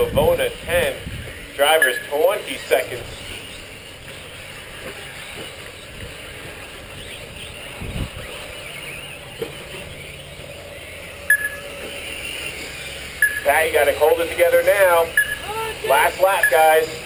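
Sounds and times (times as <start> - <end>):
short beep: 1.8 - 2.1, 11.3 - 11.7, 13.2 - 13.5, 15.1 - 15.5, 16.3 - 16.8.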